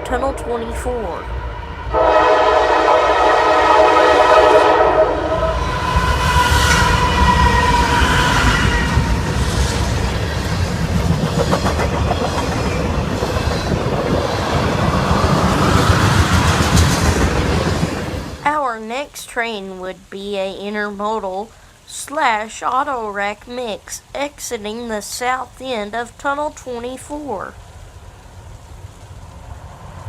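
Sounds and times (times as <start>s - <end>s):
locomotive rumbling: 0.0s - 19.1s
locomotive air horn: 1.9s - 9.1s
train wheels clicking on rails: 5.6s - 18.4s.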